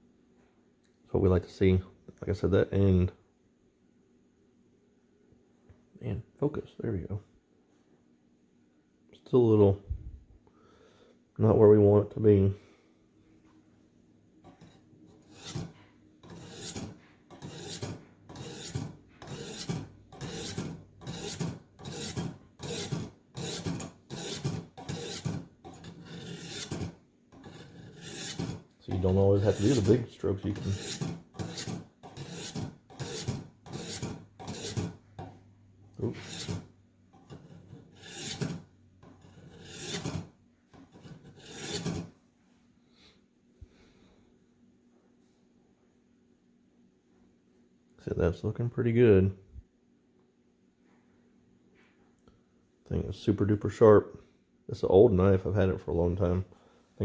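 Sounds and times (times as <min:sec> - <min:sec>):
knife rasping through sharpener: 0:14.5 - 0:35.3, 0:36.0 - 0:42.1.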